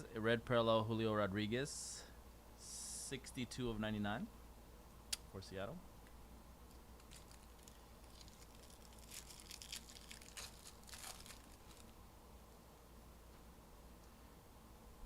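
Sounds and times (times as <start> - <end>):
card packs rustling and crinkling: 7.0 - 11.9.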